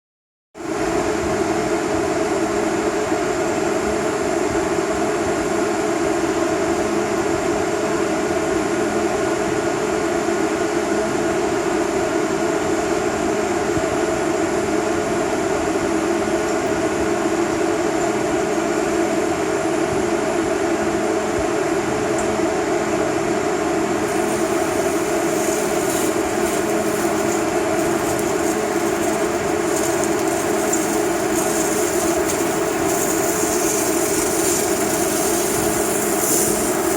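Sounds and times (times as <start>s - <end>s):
welding machine drone and hiss: 23.9s - 36.9s
welding crackle: 24.0s - 36.9s.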